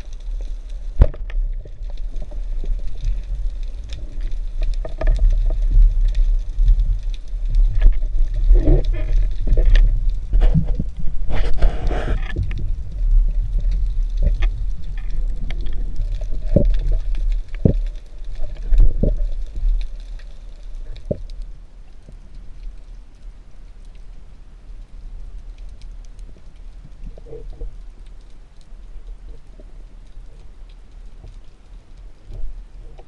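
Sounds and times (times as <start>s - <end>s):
bubbling hiss: 0.0s - 21.6s
low underwater rumble: 0.0s - 33.0s.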